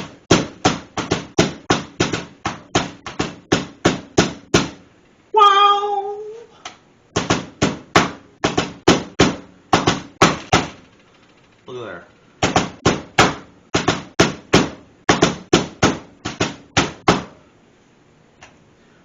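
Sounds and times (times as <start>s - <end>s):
meat mallet pounding meat: 0.0s - 4.8s, 12.4s - 17.3s
person crying out: 5.3s - 6.6s.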